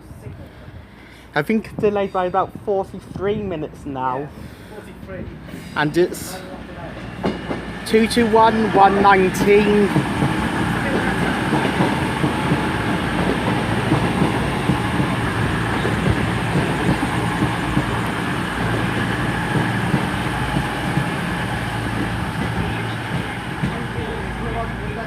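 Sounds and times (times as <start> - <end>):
diesel engines humming: 4.4 - 25.0
train wheels clattering on rails: 5.0 - 25.0.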